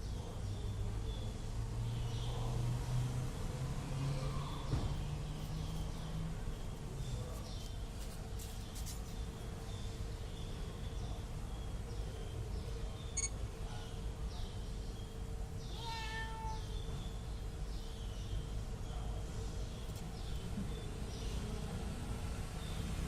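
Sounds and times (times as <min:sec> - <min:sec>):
kitten meowing: 0:15.7 - 0:16.7.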